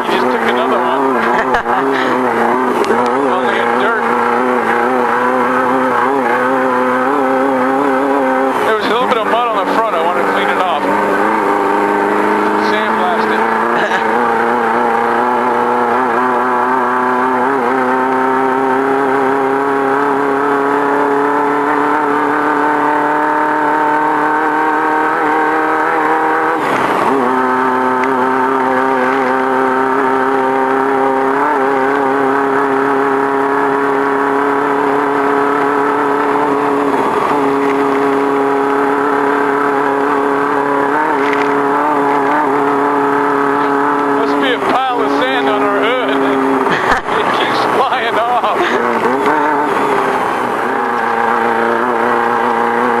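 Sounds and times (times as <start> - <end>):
race car engine running hard: 0.0 - 53.0.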